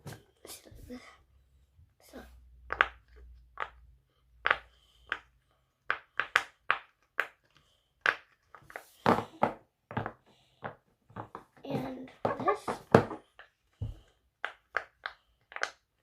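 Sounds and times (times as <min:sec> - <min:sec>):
pop-it toy popping clicks: 0:14.4 - 0:15.8.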